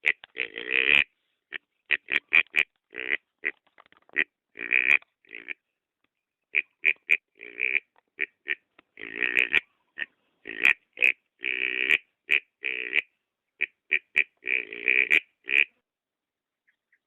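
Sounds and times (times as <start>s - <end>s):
wild boar grunting: 0.3s - 1.1s.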